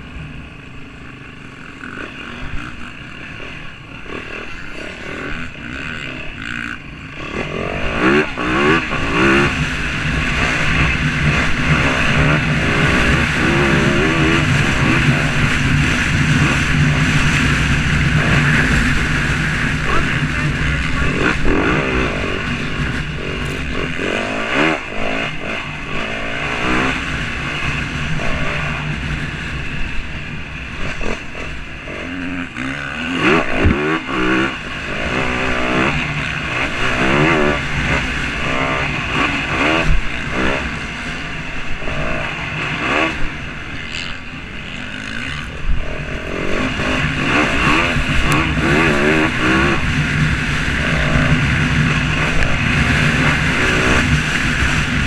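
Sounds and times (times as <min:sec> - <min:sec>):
vehicle engines revving: 0:00.0 - 0:55.0.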